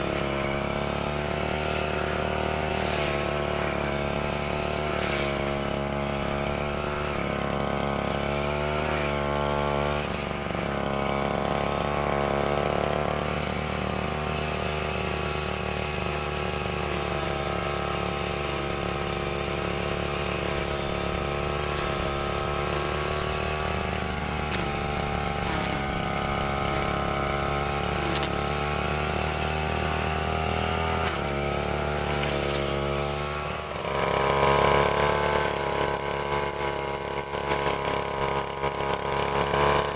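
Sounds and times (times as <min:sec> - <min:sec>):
brushcutter engine running: 0:00.0 - 0:39.9.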